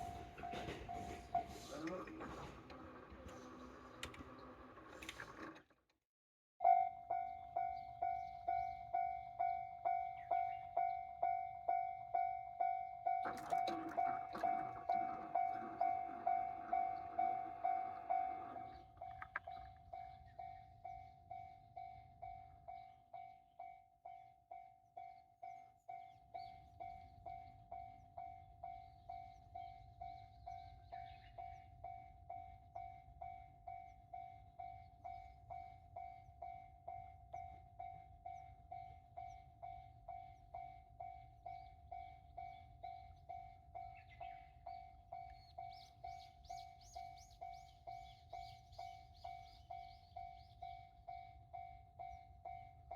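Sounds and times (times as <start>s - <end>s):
railroad crossing bell ringing: 0.0s - 3.8s, 6.6s - 52.9s.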